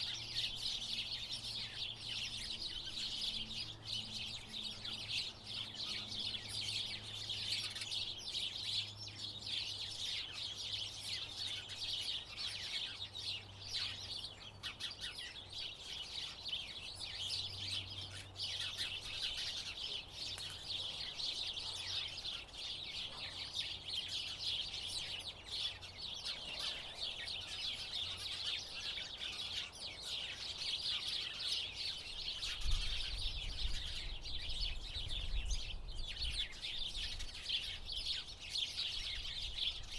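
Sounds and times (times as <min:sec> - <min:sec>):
sparrows chirping: 0:00.0 - 0:39.9.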